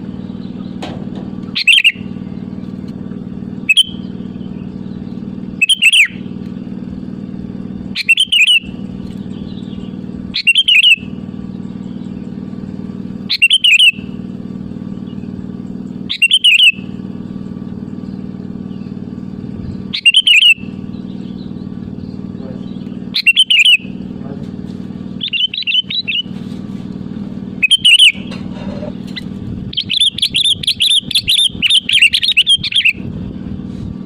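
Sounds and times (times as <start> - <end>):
low hum: 0.0 - 34.0
bird bubbly call: 1.6 - 2.1, 5.6 - 6.2, 8.0 - 8.7, 13.3 - 14.1, 16.1 - 17.0, 19.9 - 21.4, 23.1 - 24.0, 25.2 - 26.3, 27.6 - 28.4, 29.2 - 33.0.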